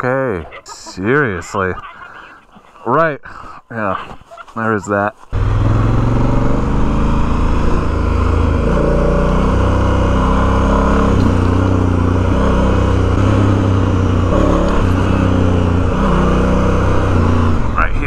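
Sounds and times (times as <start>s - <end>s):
motorcycle engine revving: 5.3s - 18.0s.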